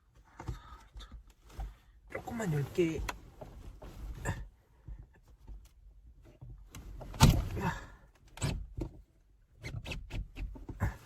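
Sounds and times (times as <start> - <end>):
car window clicks and handling: 6.4 - 7.6, 8.2 - 11.0
mechanical bump and rattle: 6.4 - 7.7.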